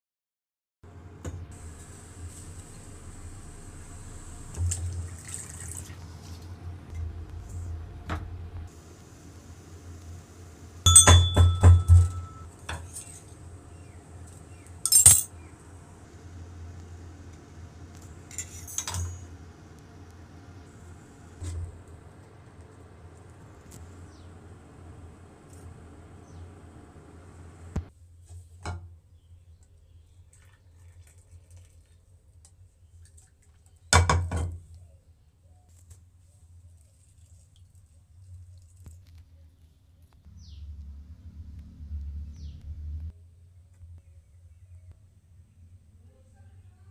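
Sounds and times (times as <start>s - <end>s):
low steady hum: 0.9s - 28.2s
metal utensils clinking on a pot: 14.9s - 15.3s, 18.3s - 19.2s.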